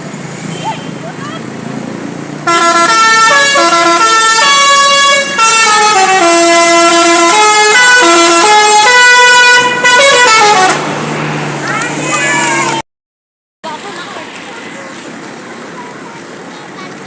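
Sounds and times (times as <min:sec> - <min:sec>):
multi-tone air horn melody: 0:02.5 - 0:10.9.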